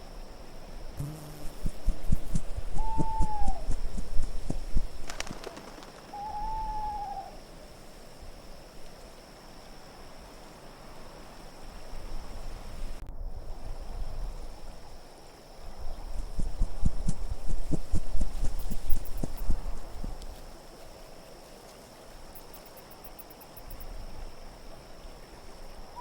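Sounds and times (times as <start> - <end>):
howling wind: 1.6 - 8.6
owl hooting: 2.1 - 7.4.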